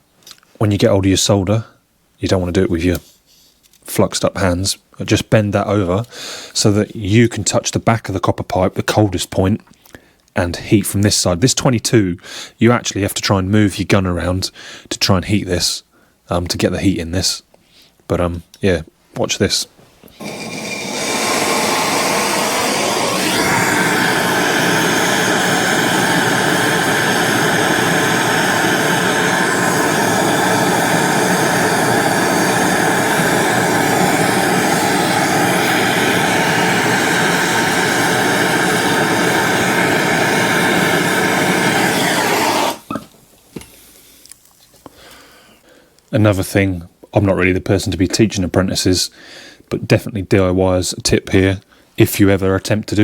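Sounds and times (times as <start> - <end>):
blowtorch flame hissing: 20.2 - 43.0.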